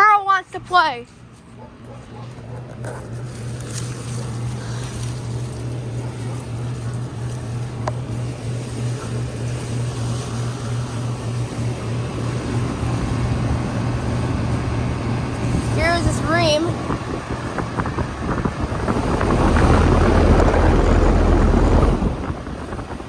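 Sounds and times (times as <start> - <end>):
air conditioner compressor hum: 0.0 - 23.0
air conditioner fan noise: 0.0 - 23.0.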